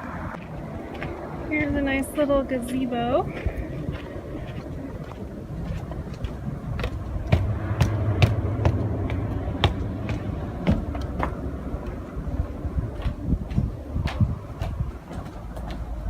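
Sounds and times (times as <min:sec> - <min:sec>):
low rumble: 0:00.0 - 0:16.0
footsteps walking: 0:00.4 - 0:16.0.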